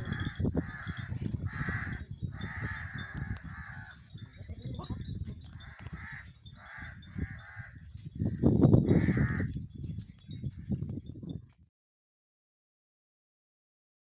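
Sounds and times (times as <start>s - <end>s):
crows cawing: 0.0s - 4.2s, 5.5s - 9.6s.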